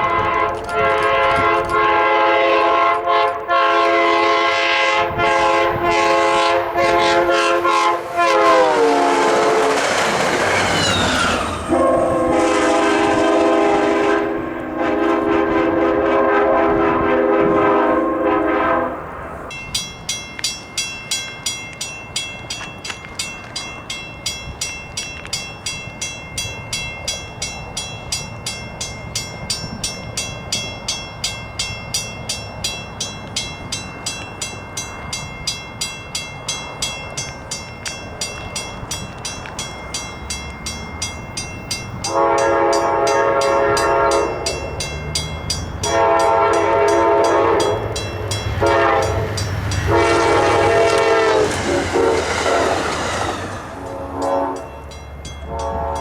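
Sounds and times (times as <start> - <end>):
locomotive horn blast: 0.0 - 10.4, 11.2 - 19.5, 42.0 - 44.6, 45.8 - 56.0
crossing bell dinging: 0.0 - 16.8, 19.5 - 56.0
low wind rumble: 0.0 - 56.0.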